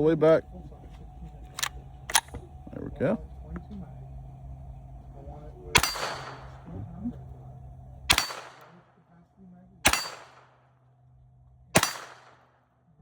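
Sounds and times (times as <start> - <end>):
gunshots with echo: 5.8 - 6.7, 8.1 - 8.9, 9.8 - 10.6, 11.8 - 12.6.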